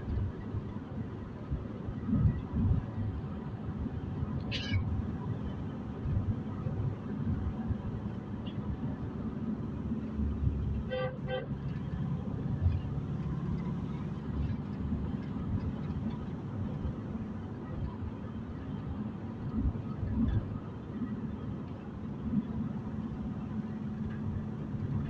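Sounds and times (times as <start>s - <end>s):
car road and engine rumble: 0.0s - 25.0s
car horn toots: 4.5s - 4.9s, 10.8s - 11.6s.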